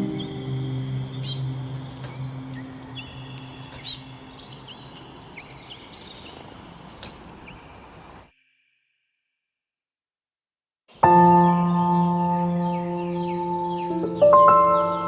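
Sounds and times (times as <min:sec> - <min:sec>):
birds chirping and calling: 0:00.0 - 0:08.3, 0:11.3 - 0:15.0.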